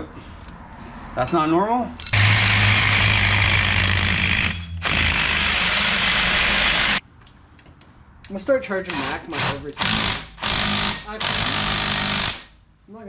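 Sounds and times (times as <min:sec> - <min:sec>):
impact wrench running: 0:02.1 - 0:07.0, 0:08.9 - 0:12.6.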